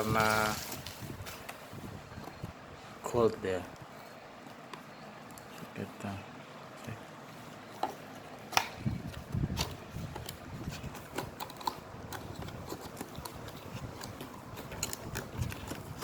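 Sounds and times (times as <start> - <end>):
packaging crinkling and clicking: 9.5 - 16.0.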